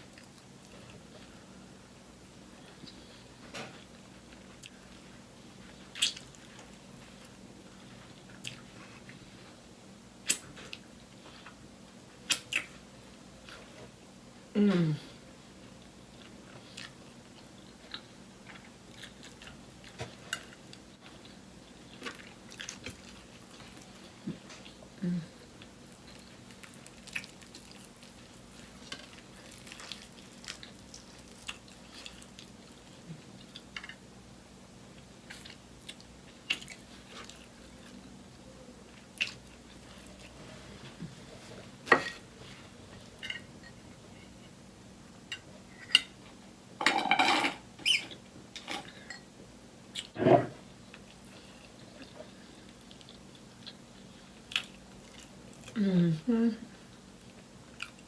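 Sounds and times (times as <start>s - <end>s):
faint steady hum: 0.0s - 58.0s
wet chewing: 26.0s - 33.6s.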